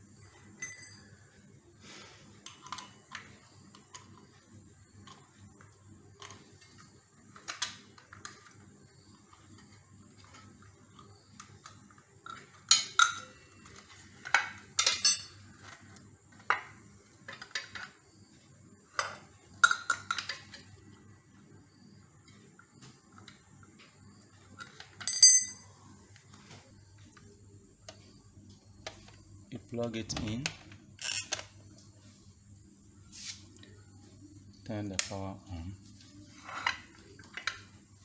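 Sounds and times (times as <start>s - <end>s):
metal clinks and knocks: 0.2s - 1.4s, 24.6s - 25.8s.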